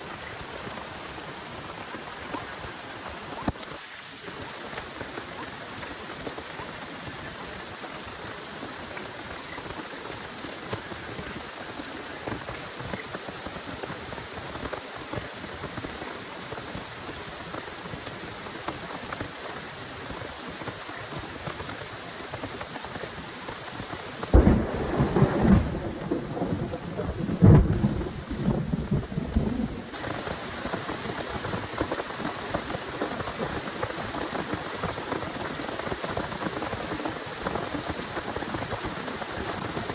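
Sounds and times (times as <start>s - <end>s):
heavy rain falling: 0.0s - 39.9s
loud thunder rumble: 24.3s - 30.2s.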